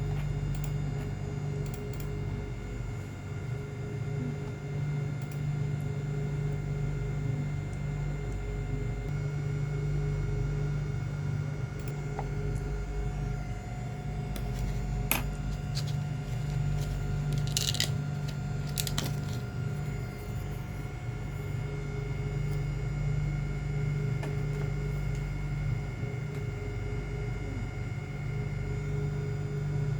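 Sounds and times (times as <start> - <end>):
steady low hum: 0.0 - 29.9
small hard parts clattering: 15.1 - 19.4.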